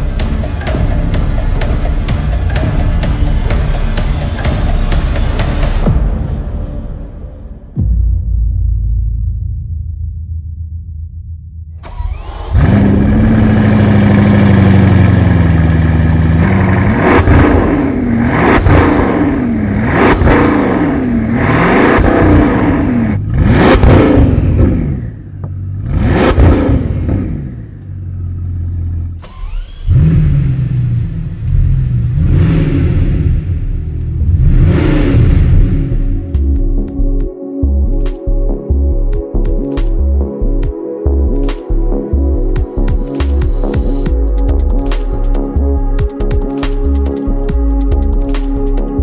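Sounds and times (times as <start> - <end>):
car engine revving: 11.8 - 36.7.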